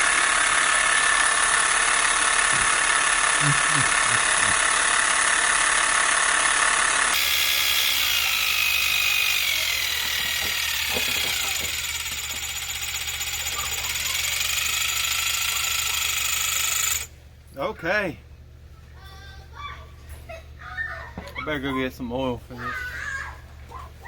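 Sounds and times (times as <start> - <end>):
electric shears buzzing: 0.0 - 17.1.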